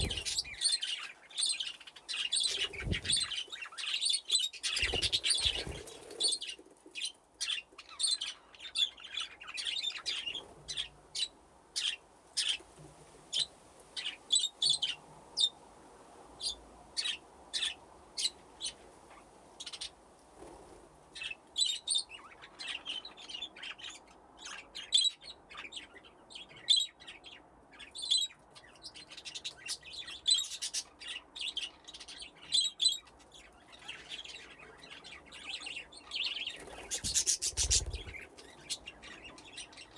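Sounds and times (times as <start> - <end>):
budgies chirping and chattering: 0.0 - 12.6, 21.2 - 39.9.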